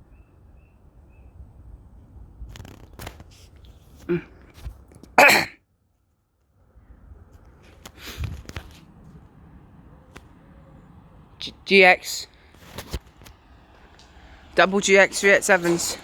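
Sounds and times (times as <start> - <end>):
person sneezing: 4.0 - 4.4, 5.2 - 5.6.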